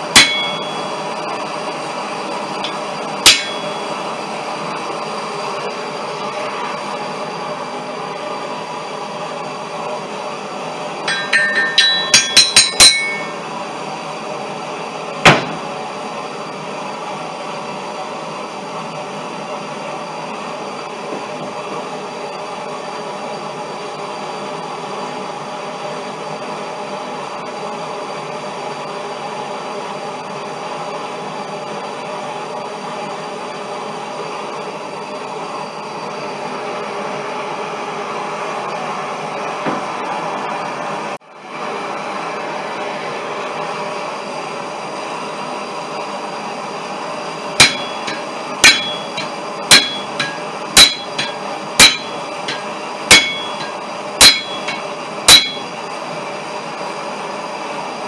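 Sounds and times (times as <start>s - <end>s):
steady mechanical hum: 0.0s - 58.0s
hammer on ringing steel: 0.1s - 1.2s, 2.6s - 4.2s, 11.1s - 13.5s, 47.6s - 55.8s.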